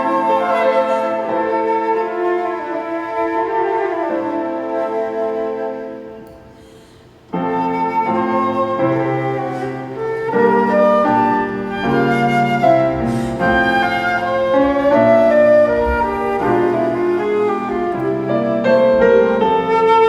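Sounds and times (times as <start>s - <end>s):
flutes playing slow piece: 0.0s - 20.0s.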